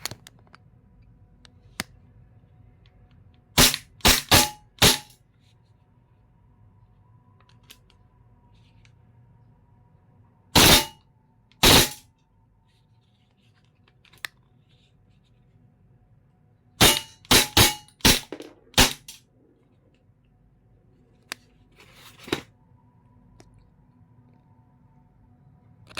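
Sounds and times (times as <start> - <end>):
airsoft pistol firing: 3.6 - 5.1, 10.6 - 11.0, 16.8 - 19.2.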